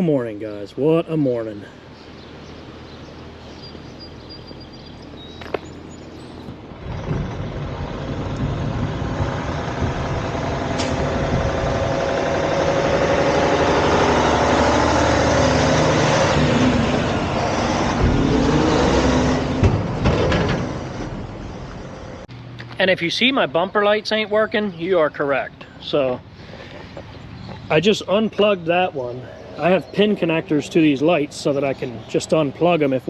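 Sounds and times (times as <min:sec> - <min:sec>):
truck diesel engine passing: 0:05.8 - 0:25.1.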